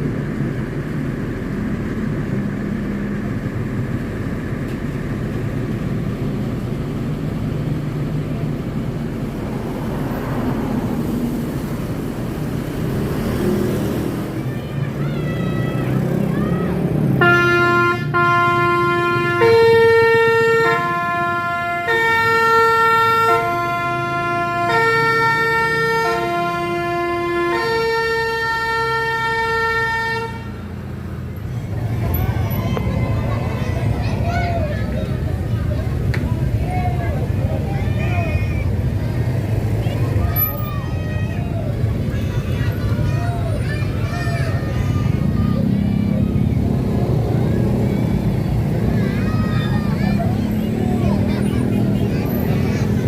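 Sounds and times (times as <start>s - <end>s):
bus engine and road noise: 0.0s - 53.0s
multi-tone bus horn melody: 15.9s - 31.3s.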